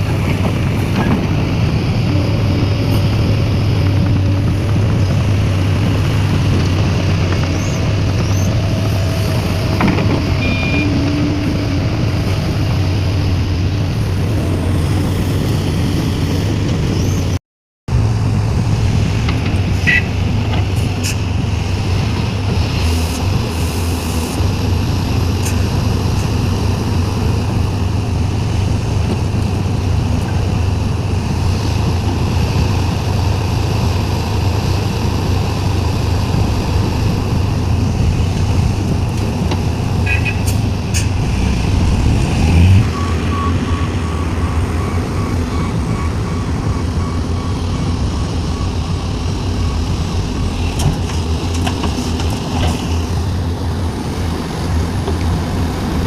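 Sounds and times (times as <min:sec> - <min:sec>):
dump truck engine: 0:00.0 - 0:56.0
excavator diesel engine: 0:00.0 - 0:56.0
backup alarm beeping: 0:10.4 - 0:11.5, 0:42.8 - 0:50.2.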